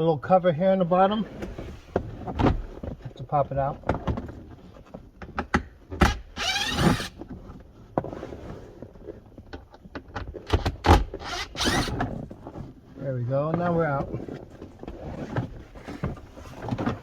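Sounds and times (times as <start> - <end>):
creaking plastic squeal: 6.1 - 7.2, 11.0 - 12.2.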